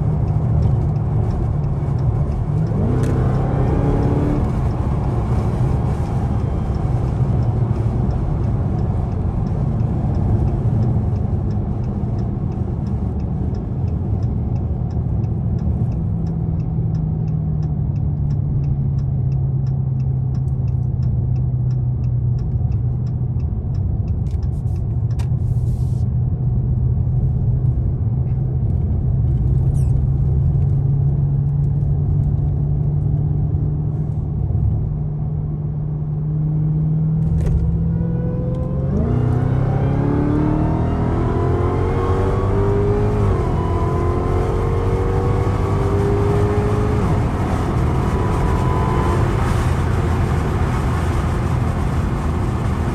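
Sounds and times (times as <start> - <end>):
light regular ticking: 0.0 - 30.0
car engine drone: 0.0 - 52.9
road rumble: 0.0 - 52.9.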